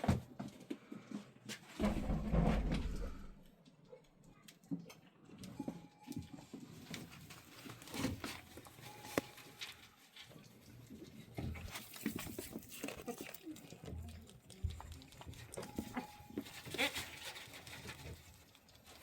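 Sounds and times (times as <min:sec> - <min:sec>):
light knocks and shuffling: 0:05.4 - 0:19.0.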